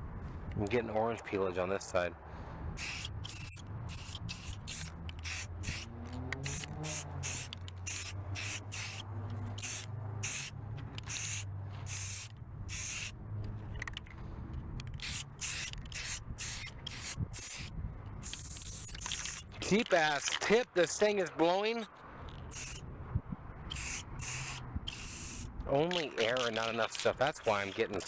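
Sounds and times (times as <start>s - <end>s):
aerosol spray can hissing: 2.8s - 9.0s, 9.6s - 13.2s, 14.9s - 19.4s, 22.5s - 22.8s, 23.7s - 25.5s, 27.4s - 27.9s.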